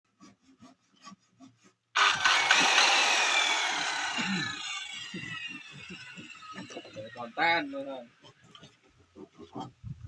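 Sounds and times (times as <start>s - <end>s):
circular saw whirring: 2.0s - 7.4s.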